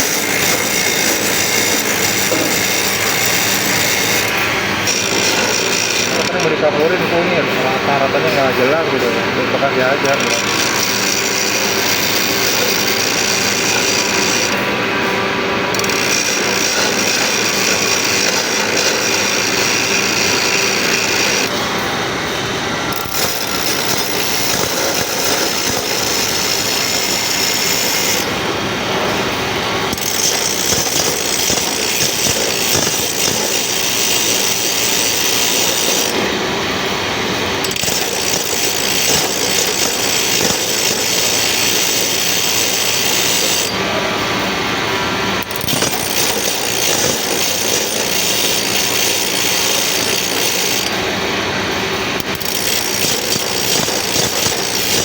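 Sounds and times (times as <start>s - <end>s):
file rasping on saw teeth: 0.0s - 6.4s, 29.9s - 36.2s, 37.7s - 43.7s, 52.4s - 55.0s.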